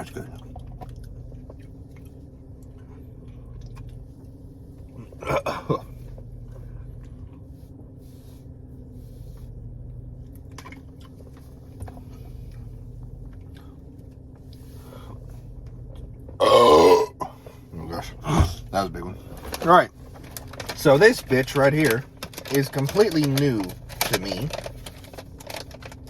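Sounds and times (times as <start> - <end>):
steady low hum: 0.0 - 26.0
man chewing and crunching: 0.2 - 7.5, 15.8 - 17.4.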